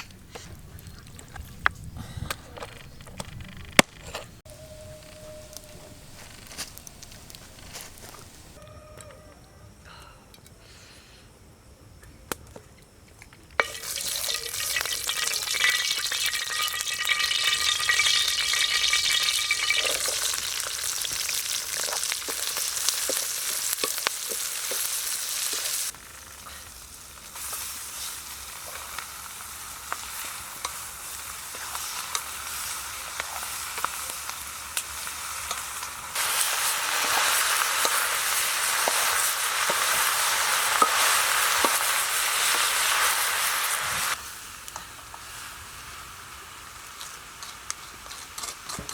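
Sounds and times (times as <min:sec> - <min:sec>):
stirring in a pan: 0:13.6 - 0:25.9
food sizzling in a pan: 0:13.6 - 0:48.9.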